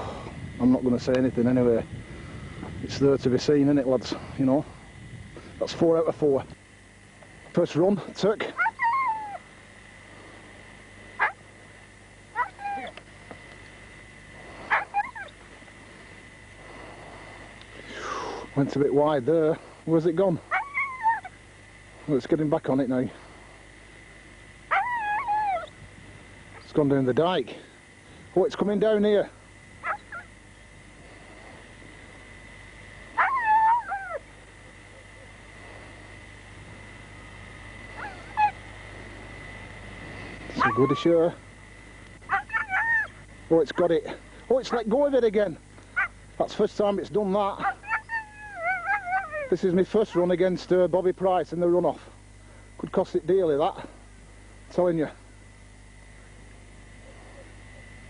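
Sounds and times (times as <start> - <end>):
dog yelping and whining: 8.6 - 9.4, 12.4 - 13.0, 14.7 - 15.4, 20.5 - 21.4, 24.7 - 25.7, 29.8 - 30.3, 33.2 - 34.2, 38.0 - 38.6, 40.6 - 41.1, 42.3 - 43.2, 47.6 - 49.5.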